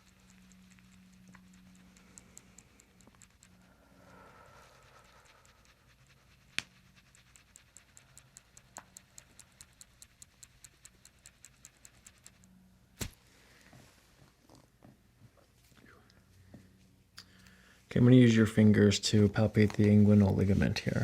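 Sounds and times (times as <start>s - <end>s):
faint regular ticking: 0.0s - 13.1s.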